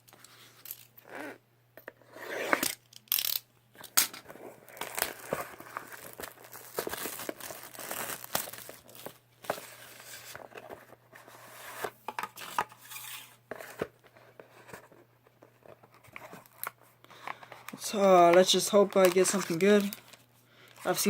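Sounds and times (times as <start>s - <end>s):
packaging tearing and crinkling: 4.6s - 10.6s.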